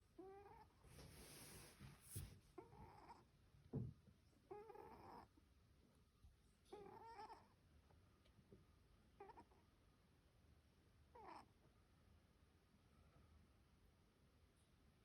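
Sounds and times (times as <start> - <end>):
cat snoring: 4.5 - 5.3, 6.8 - 7.4.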